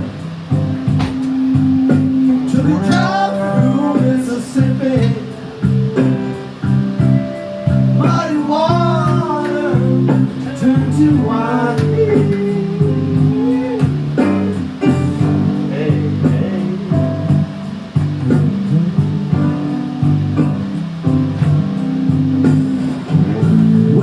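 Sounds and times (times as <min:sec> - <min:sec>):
blues guitar: 0:00.0 - 0:24.0
person singing: 0:02.2 - 0:06.6, 0:07.4 - 0:20.2, 0:23.0 - 0:24.0.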